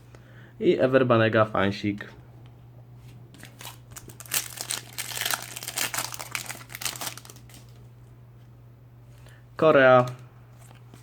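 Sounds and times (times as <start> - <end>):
foil packet crinkling: 3.3 - 7.9.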